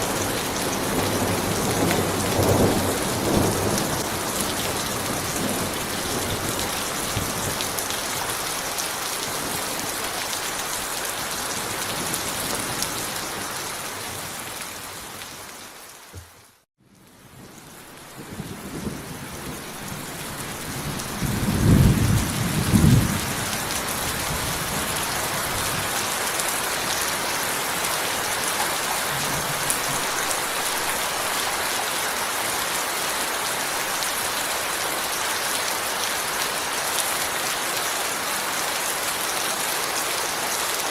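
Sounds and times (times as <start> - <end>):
heavy rain falling: 0.0 - 40.9
thunder rumble: 18.2 - 25.0.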